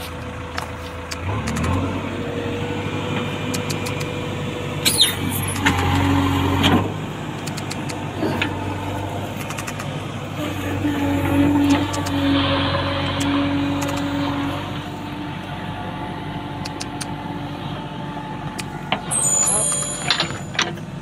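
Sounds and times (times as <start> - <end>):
vehicle engine running: 0.0 - 21.0
clicks: 3.5 - 4.1, 7.4 - 8.5, 9.4 - 10.0, 16.6 - 17.1
brief high squeal: 4.8 - 5.4, 19.1 - 20.5.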